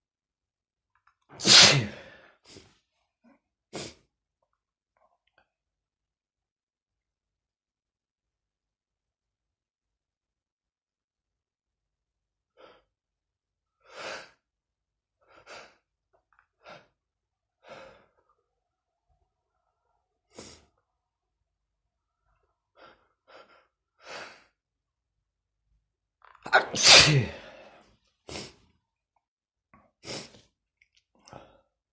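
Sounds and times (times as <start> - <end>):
man sneezing loudly: 1.3 - 2.2, 26.4 - 28.5.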